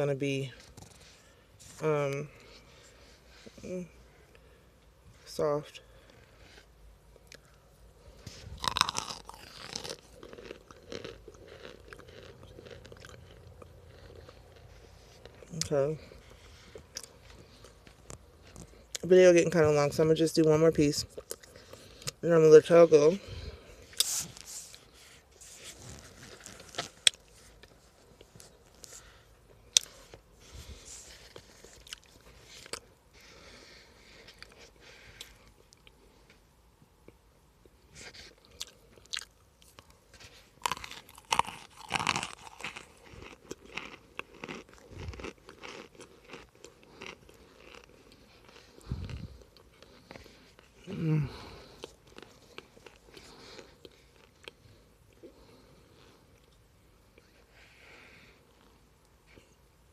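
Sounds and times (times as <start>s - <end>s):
crunchy bite and chewing: 8.2s - 19.0s, 38.2s - 56.5s.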